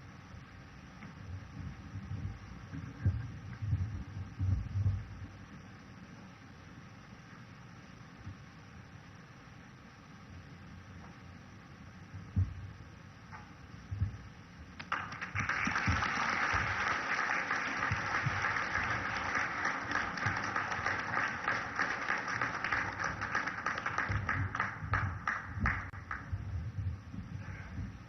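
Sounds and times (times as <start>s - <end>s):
audience applauding: 14.8s - 26.3s.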